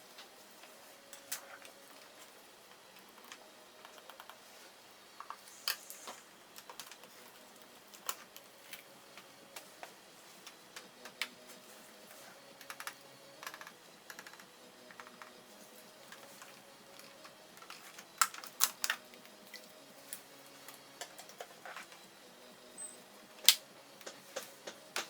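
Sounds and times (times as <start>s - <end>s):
small plastic and metal parts clicking: 17.0s - 19.6s.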